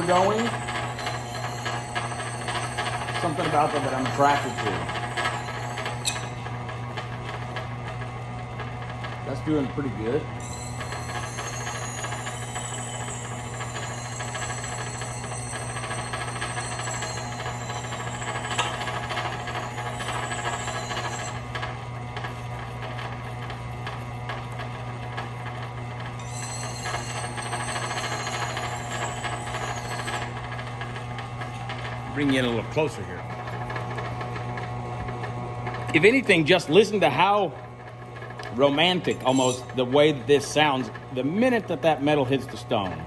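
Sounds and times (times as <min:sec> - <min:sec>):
electric motor humming: 0:00.0 - 0:07.1, 0:09.5 - 0:21.6, 0:26.2 - 0:31.3.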